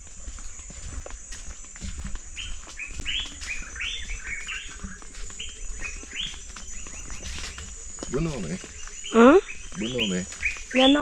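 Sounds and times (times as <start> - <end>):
bird chirping: 2.3 - 11.0.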